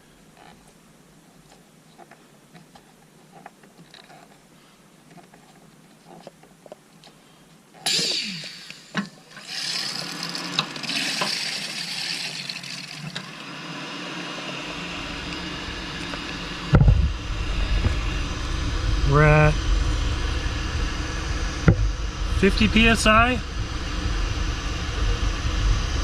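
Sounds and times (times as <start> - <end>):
water rushing through pipes: 7.9 - 14.0
low rumble: 14.6 - 26.0.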